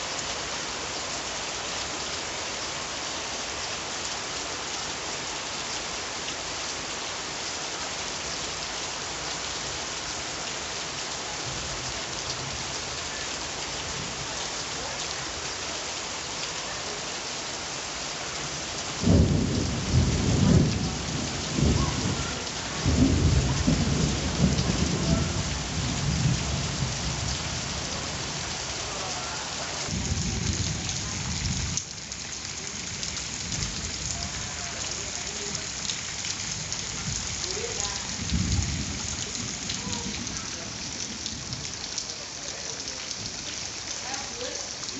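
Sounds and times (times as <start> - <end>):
rain hiss: 0.0 - 44.9
thunder rumbling: 19.0 - 27.3, 38.0 - 40.3.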